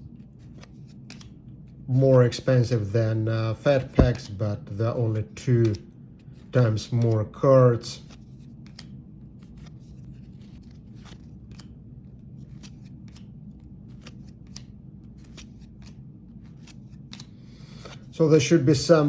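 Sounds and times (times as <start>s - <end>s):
steady low hum: 0.0s - 19.0s
trading cards clicking and sliding: 0.2s - 1.4s, 3.8s - 4.4s, 5.4s - 18.1s.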